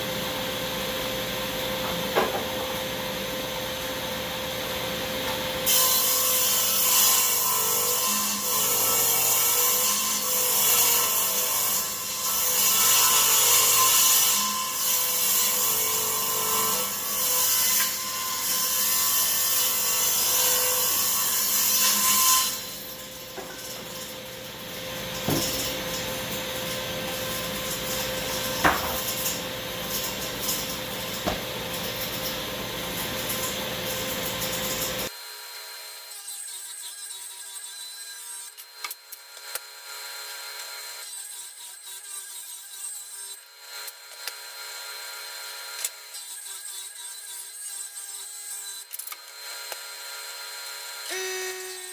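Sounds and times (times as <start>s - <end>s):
table saw cutting wood: 0.0s - 51.9s
saw motor humming: 15.1s - 51.9s.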